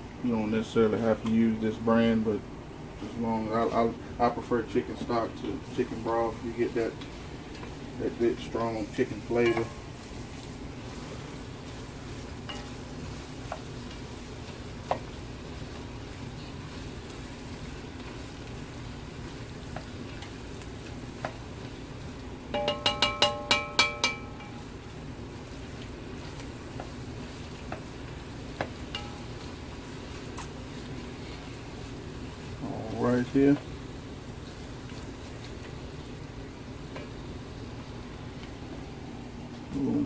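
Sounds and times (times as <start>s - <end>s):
roux sizzling in a pot: 0.0s - 39.7s
ringing metal taps: 22.6s - 24.5s.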